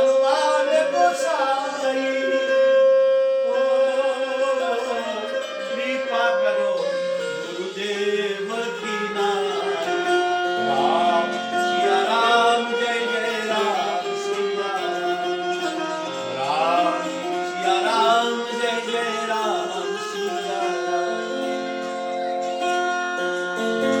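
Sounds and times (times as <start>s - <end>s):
held instrumental notes: 0.0s - 24.0s
person singing wavering melody: 3.5s - 22.6s.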